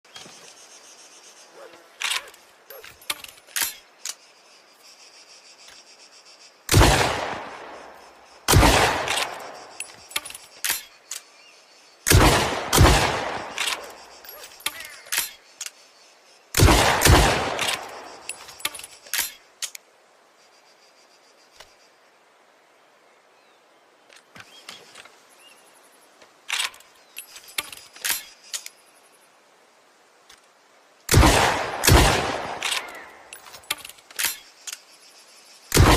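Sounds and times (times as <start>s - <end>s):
metallic gun handling clicks: 2.0s - 4.2s, 32.6s - 34.9s
shotgun shots: 6.7s - 7.8s, 8.5s - 9.6s, 12.1s - 14.0s, 16.6s - 18.2s, 31.1s - 33.0s.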